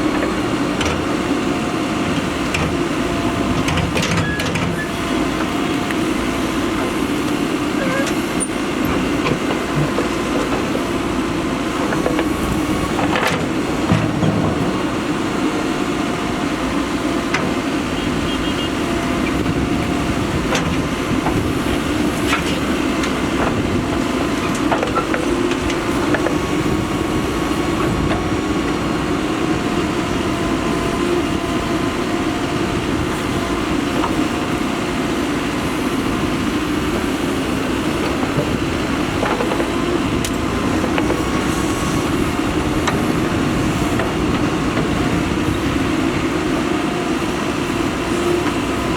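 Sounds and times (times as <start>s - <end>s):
diesel engine running under load: 0.0s - 48.9s.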